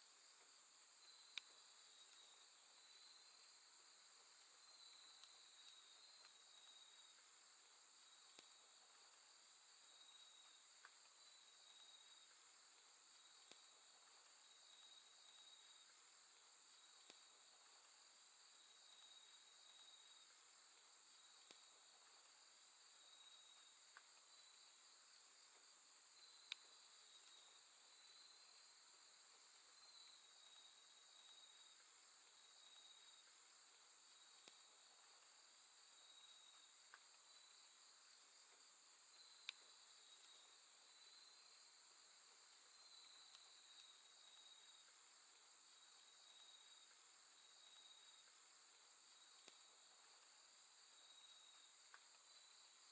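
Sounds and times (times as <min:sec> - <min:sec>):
crickets chirping: 0:00.0 - 0:52.9
faint clicks: 0:26.4 - 0:27.4, 0:30.6 - 0:35.3, 0:47.7 - 0:50.9, 0:51.5 - 0:52.4.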